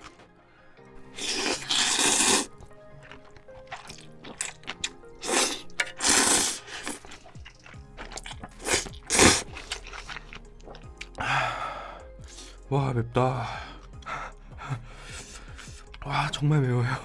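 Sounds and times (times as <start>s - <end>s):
soft background music: 0.0s - 17.0s
slurping noodles: 1.0s - 11.1s
chewing: 1.1s - 11.2s.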